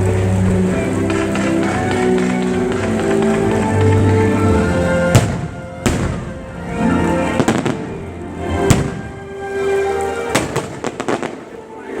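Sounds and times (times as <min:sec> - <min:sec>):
loud show music: 0:00.2 - 0:09.4
fireworks bangs: 0:01.0 - 0:06.4, 0:07.2 - 0:09.3, 0:10.3 - 0:11.6.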